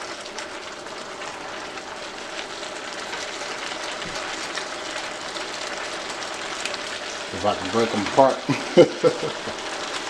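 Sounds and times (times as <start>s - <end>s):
noodles sizzling in a pan: 0.0s - 10.0s.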